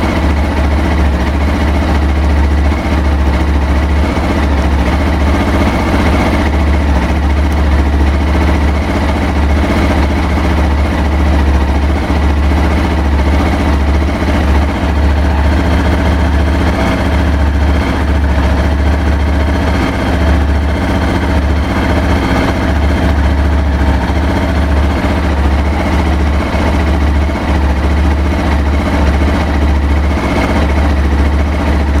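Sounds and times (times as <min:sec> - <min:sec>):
motorcycle engine idling unevenly: 0:00.0 - 0:32.0.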